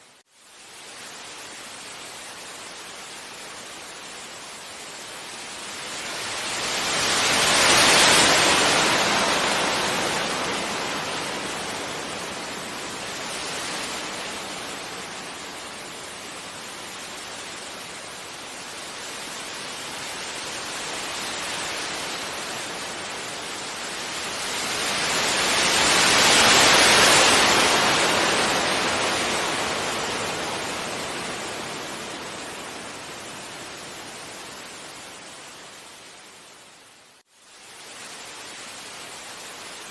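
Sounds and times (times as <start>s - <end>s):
sea waves breaking on beach: 2.2s - 35.6s.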